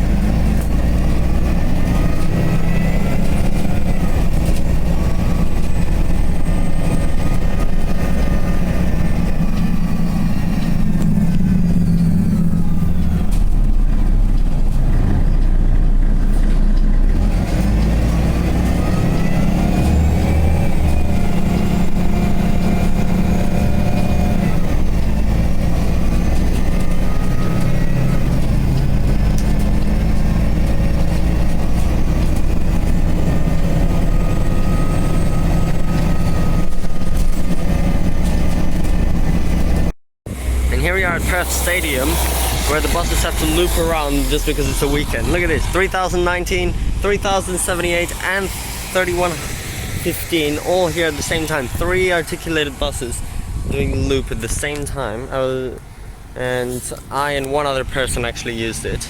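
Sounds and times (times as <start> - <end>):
bus engine running: 0.0 - 59.0
rising whine: 0.2 - 14.5, 40.3 - 55.0.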